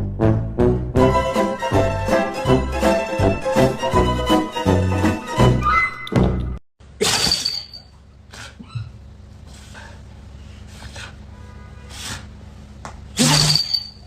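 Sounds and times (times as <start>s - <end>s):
glass shattering crash: 7.0s - 7.9s.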